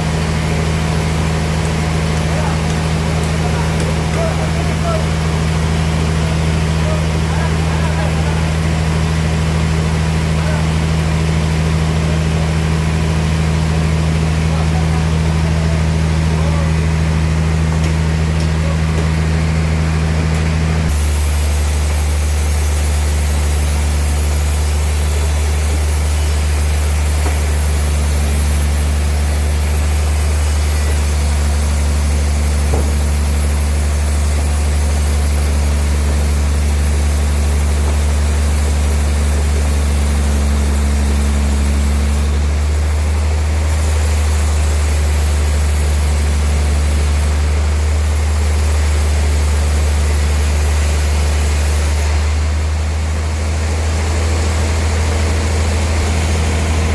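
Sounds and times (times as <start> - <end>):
higher machinery hum: 0.0 - 56.9
sawmill machinery deep hum: 0.0 - 56.9
machinery hiss: 20.9 - 53.5.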